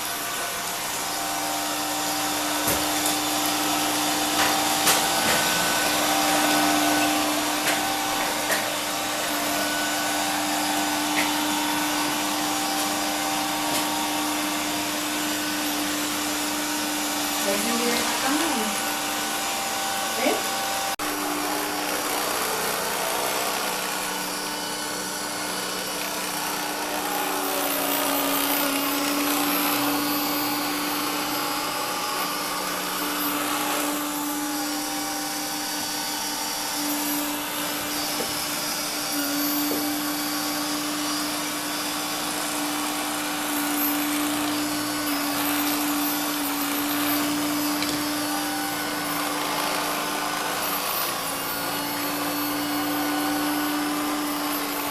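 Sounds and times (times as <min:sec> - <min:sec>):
robot vacuum cleaner whirring: 0:00.0 - 0:54.9.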